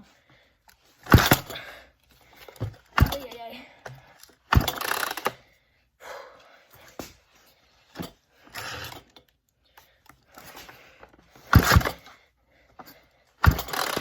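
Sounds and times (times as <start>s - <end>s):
chainsaw starter rope pulls: 0.7s - 5.5s, 8.0s - 9.4s, 10.1s - 12.2s, 12.8s - 14.0s.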